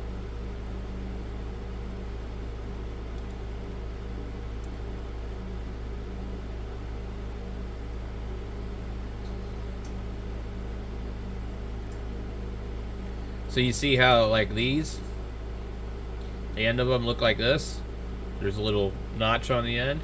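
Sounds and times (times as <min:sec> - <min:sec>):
electrical hum: 0:00.0 - 0:20.0
fan hiss: 0:00.0 - 0:20.0
faint clicks: 0:03.1 - 0:03.4.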